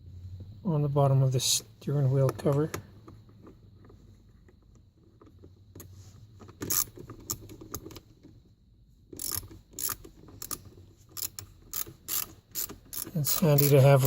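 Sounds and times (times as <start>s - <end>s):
socket ratchet clicking: 6.6s - 7.9s, 9.2s - 14.0s.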